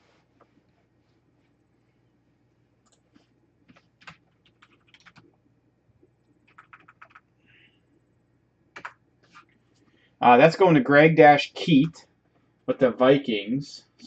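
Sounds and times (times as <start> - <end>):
typing on a computer keyboard: 3.7 - 5.4, 6.4 - 7.3, 8.7 - 9.5.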